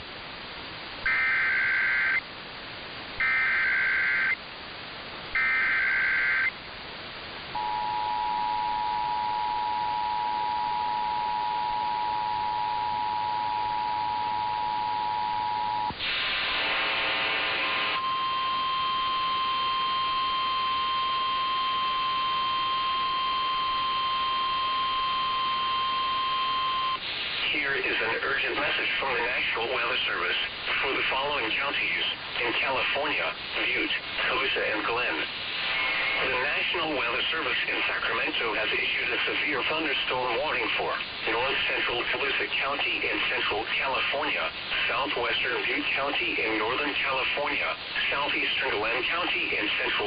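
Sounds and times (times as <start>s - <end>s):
single-tone alarm: 1.1s - 2.2s, 3.2s - 4.4s, 5.4s - 6.5s, 7.6s - 15.9s, 18.0s - 27.0s
two-tone attention signal: 7.6s - 15.9s, 18.0s - 27.0s.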